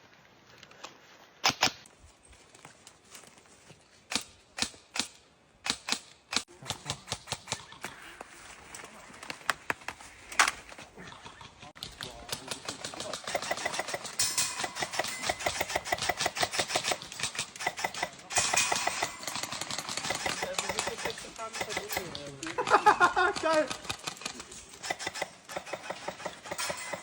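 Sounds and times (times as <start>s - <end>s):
rapid automatic airsoft bursts: 12.3s - 22.1s, 23.3s - 27.0s.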